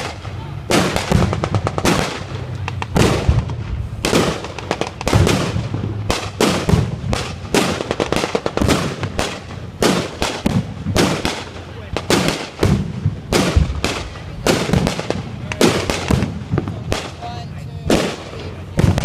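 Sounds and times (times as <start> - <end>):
low rumble: 0.0 - 7.6
blank gunfire and blasts: 0.0 - 19.0.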